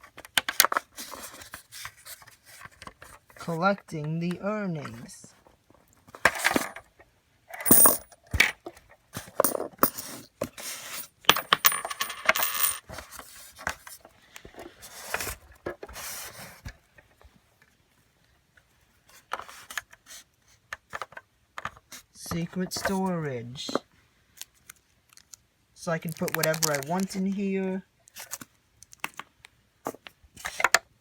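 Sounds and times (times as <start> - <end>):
coins clinking and rattling: 7.6 - 8.1, 9.4 - 10.2, 10.9 - 12.8.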